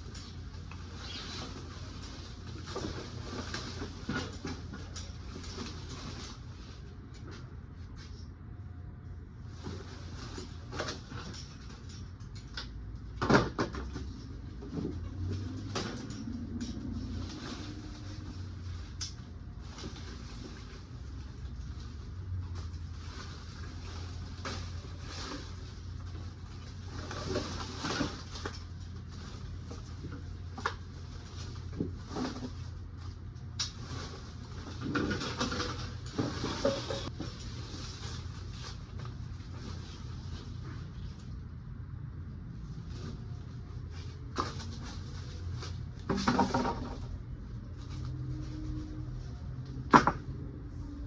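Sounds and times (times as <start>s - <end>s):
rustling and scraping: 0.0s - 8.6s, 9.4s - 41.6s, 42.4s - 51.0s.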